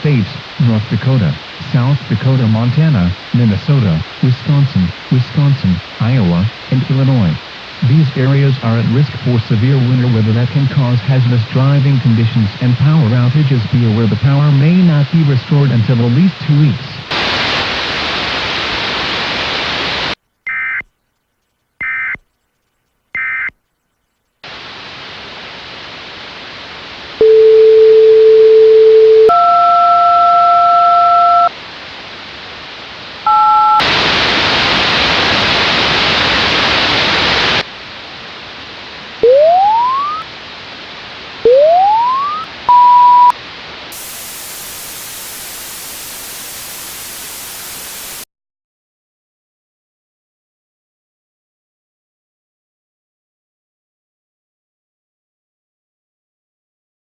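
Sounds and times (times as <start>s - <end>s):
data bursts: 39.2s - 40.2s, 41.5s - 43.3s
rising chirps: 39.2s - 40.2s, 41.5s - 43.3s
synthetic alert tones: 39.2s - 40.2s, 41.5s - 43.3s
thin high hiss: 43.9s - 48.3s
radio static: 44.0s - 48.3s.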